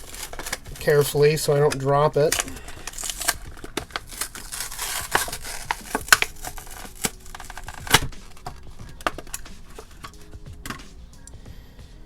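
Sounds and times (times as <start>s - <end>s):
packaging tearing and crinkling: 0.0s - 10.3s.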